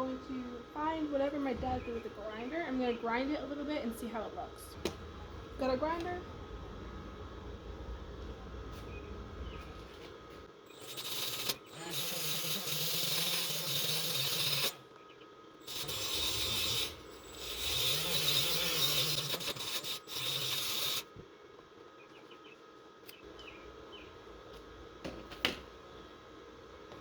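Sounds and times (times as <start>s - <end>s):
angle grinder grinding steel: 10.7s - 14.9s, 15.6s - 21.1s.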